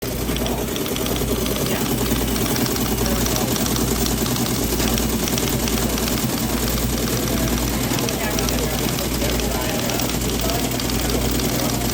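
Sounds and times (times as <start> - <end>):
rapid regular ticking: 0.0 - 11.9
teletype machine running: 0.0 - 11.9.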